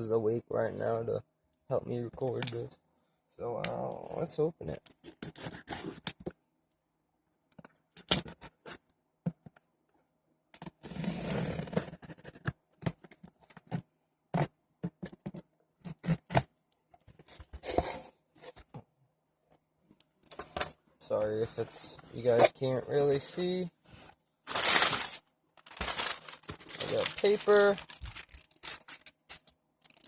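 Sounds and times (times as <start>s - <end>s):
tape and packaging tearing: 24.5s - 30.0s.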